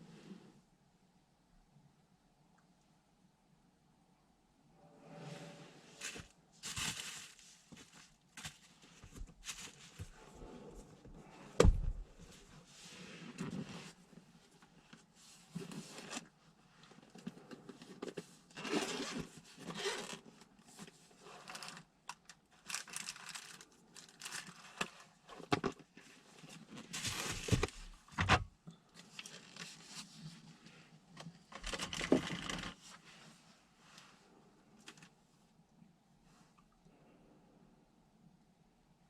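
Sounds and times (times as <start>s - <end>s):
rustling and scraping: 4.8s - 21.9s, 22.6s - 35.2s.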